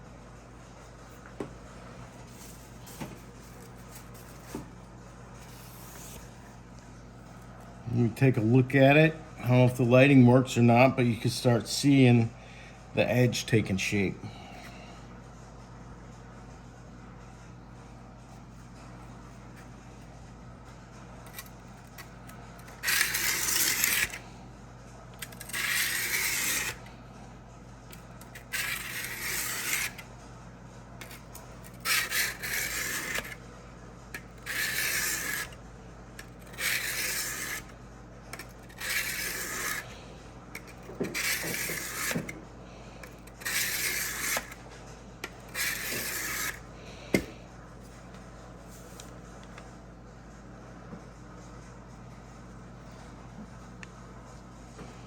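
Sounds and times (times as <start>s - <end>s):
blade scraping on sharpening plate: 22.6s - 24.2s, 25.2s - 26.8s, 28.3s - 30.0s, 31.0s - 33.4s, 34.2s - 35.6s, 36.2s - 37.7s, 38.4s - 40.0s, 40.6s - 42.4s, 43.1s - 44.6s, 45.5s - 46.6s.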